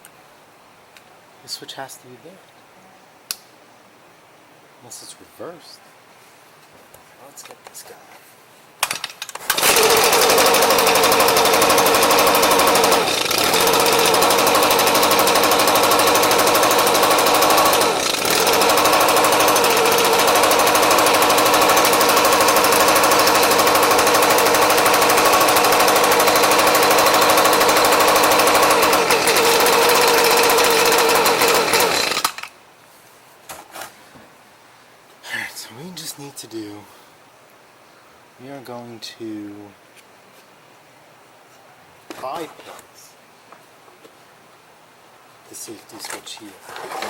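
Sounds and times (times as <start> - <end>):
two-stroke blower engine running: 9.5 - 32.5.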